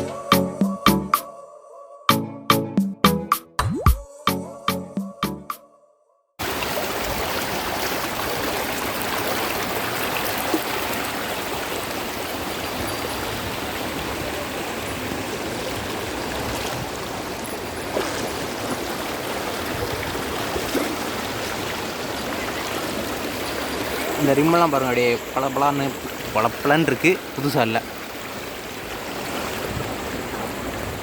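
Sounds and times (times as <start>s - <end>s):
stream water rushing: 6.4s - 31.0s.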